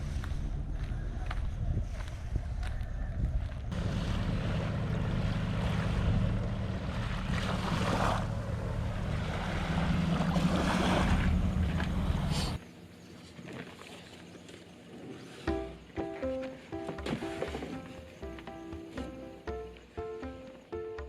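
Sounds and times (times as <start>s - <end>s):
rushing wind: 0.0s - 12.6s
water-like noise: 3.7s - 12.6s.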